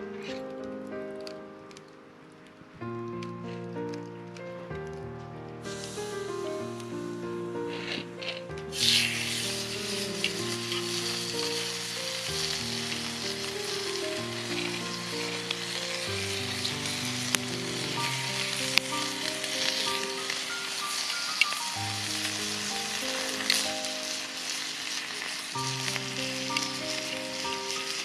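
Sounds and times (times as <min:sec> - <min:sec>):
background music sustained notes: 0:00.0 - 0:28.0
sharp crackles: 0:00.0 - 0:28.0
food sizzling in a skillet: 0:05.7 - 0:06.8, 0:07.6 - 0:28.0.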